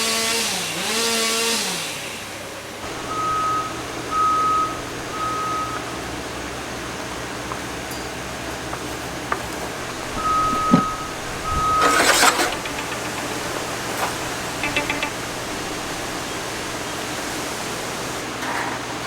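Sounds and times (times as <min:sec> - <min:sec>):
short electronic beeps: 0:03.0 - 0:05.8, 0:10.1 - 0:13.2
steady hiss: 0:07.6 - 0:18.2.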